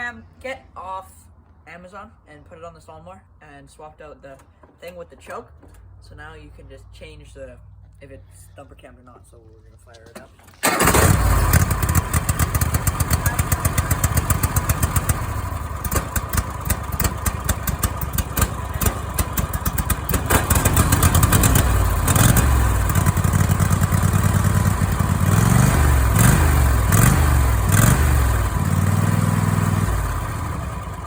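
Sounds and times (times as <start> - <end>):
lawnmower engine idling and revving: 10.5 - 31.0.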